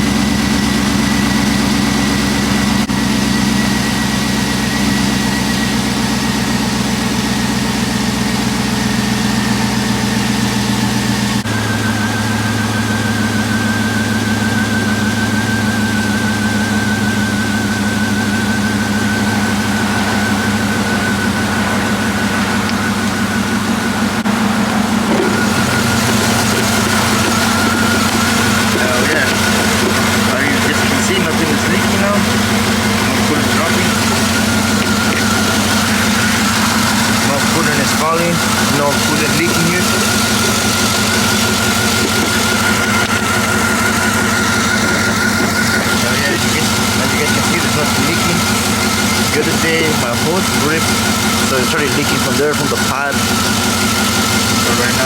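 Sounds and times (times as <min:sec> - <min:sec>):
thin high whine: 0:00.0 - 0:55.0
truck engine idling: 0:00.0 - 0:55.0
man talking: 0:28.5 - 0:32.4, 0:33.0 - 0:34.3, 0:37.2 - 0:40.1, 0:45.8 - 0:48.6, 0:49.3 - 0:53.2, 0:54.6 - 0:55.0.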